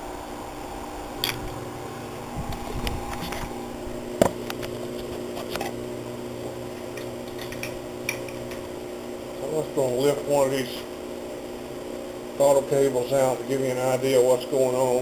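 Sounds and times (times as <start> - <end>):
steady background hum: 0.0 - 15.0.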